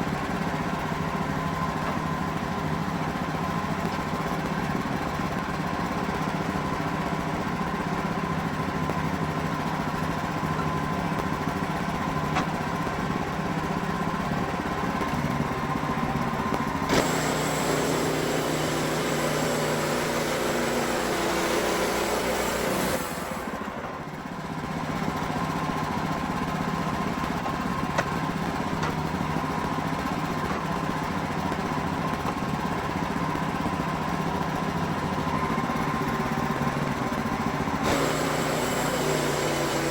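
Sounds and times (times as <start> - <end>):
sawmill engine running: 0.0 - 39.9
band blade sawing through log: 16.9 - 23.6, 37.8 - 39.9.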